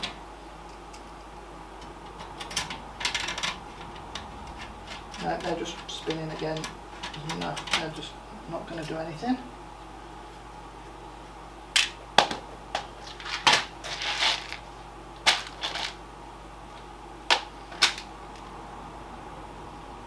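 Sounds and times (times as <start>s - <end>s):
rustling: 13.0s - 16.0s.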